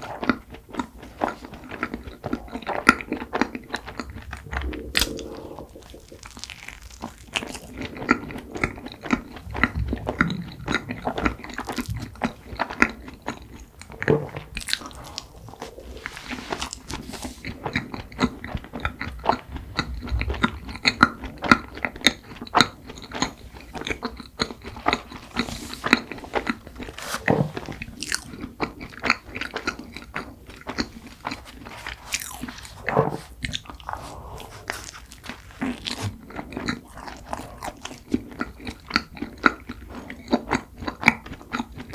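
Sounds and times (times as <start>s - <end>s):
chewing with mouth clicks: 0.0s - 41.9s
biting soft bread: 23.2s - 41.9s.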